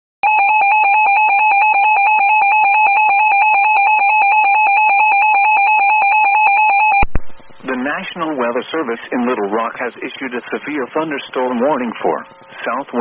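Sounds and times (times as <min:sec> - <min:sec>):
two-tone alarm: 0:00.2 - 0:07.2.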